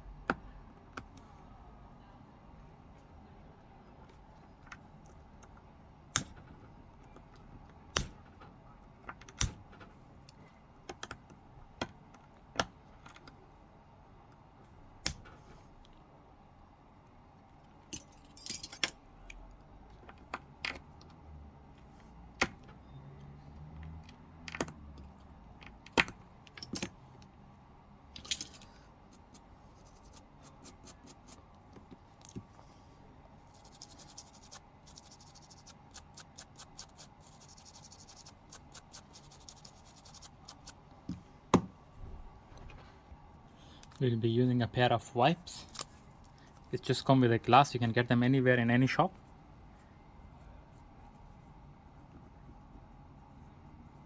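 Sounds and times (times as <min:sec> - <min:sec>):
tools clicking and tapping: 0:23.8 - 0:27.0.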